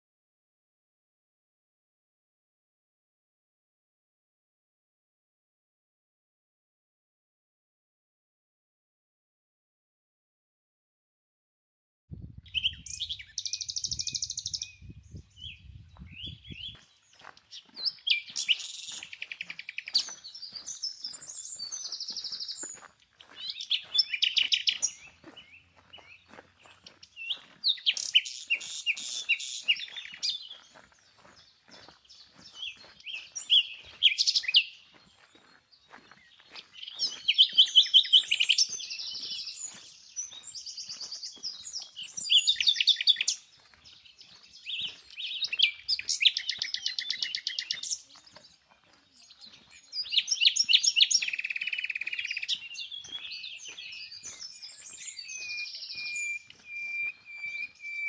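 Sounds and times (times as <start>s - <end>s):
songbird warbling with trills: 12.5s - 15.0s, 27.1s - 30.6s, 45.2s - 48.0s, 50.0s - 58.0s.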